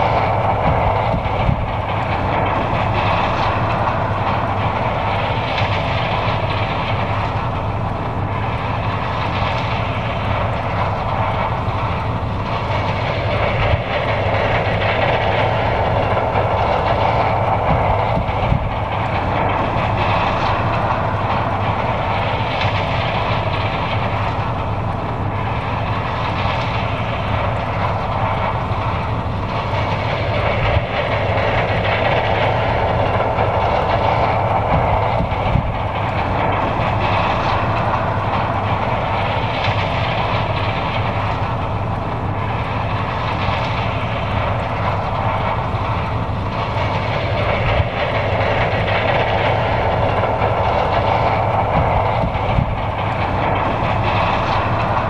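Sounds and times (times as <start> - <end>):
combine harvester running: 0.0 - 55.0.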